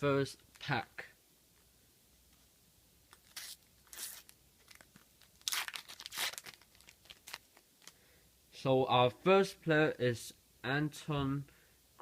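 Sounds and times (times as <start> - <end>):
wrapper tearing and crinkling: 3.1 - 8.0.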